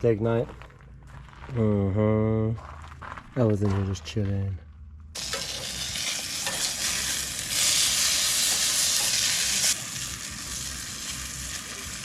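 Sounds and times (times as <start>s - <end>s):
steak sizzling in a pan: 5.2s - 12.0s.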